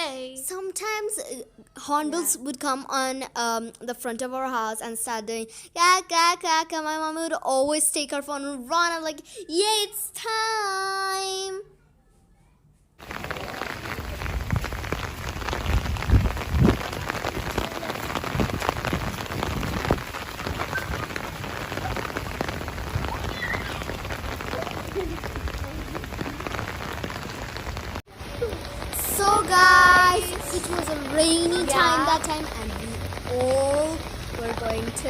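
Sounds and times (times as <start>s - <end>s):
rain pattering: 13.0s - 35.0s.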